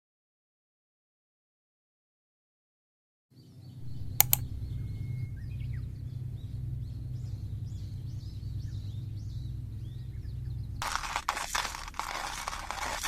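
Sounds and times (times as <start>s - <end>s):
small birds chirping: 3.4s - 13.0s
steady low rumble: 3.6s - 13.0s
sharp clicks: 3.9s - 4.6s.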